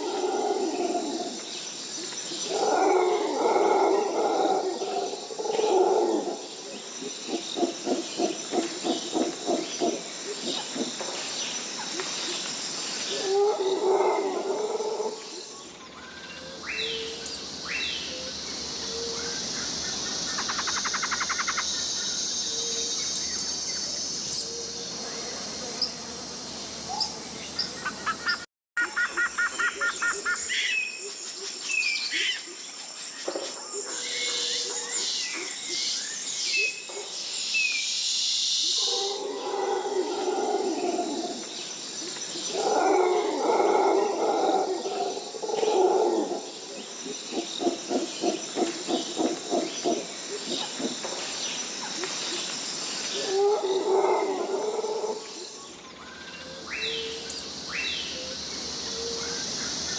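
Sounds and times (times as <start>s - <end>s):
insects droning: 0.0s - 59.9s
birds chirping and calling: 15.8s - 31.0s, 55.7s - 59.9s.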